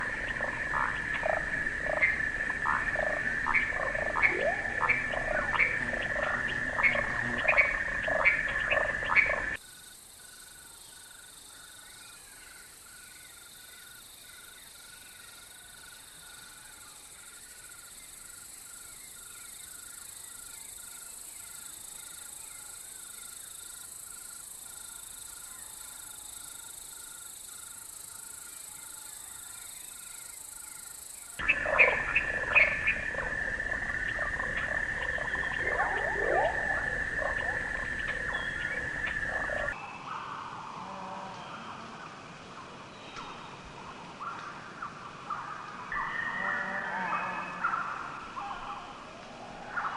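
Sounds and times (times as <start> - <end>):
wild animal calls: 31.4 - 39.8.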